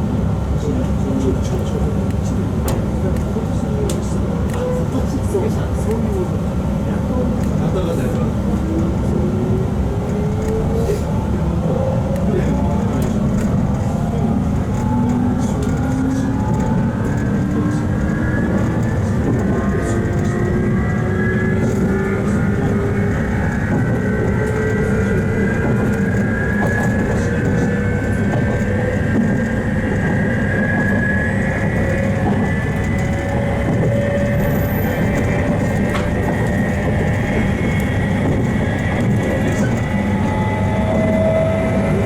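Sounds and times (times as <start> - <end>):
train running rumble: 0.0 - 42.0
electric train motor whine: 8.6 - 42.0.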